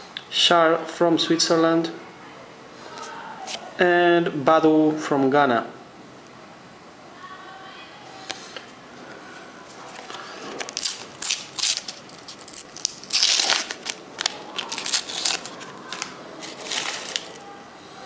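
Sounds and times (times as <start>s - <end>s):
wrapper crinkling and tearing: 9.9s - 17.5s.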